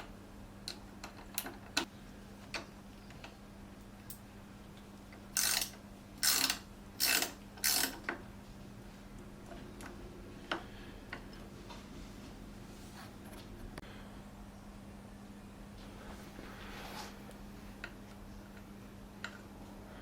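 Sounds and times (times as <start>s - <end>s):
ratchet ratcheting: 5.3s - 8.1s.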